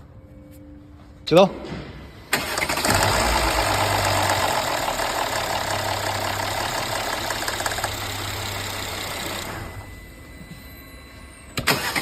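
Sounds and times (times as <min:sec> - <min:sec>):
car engine idling: 0:02.4 - 0:10.3.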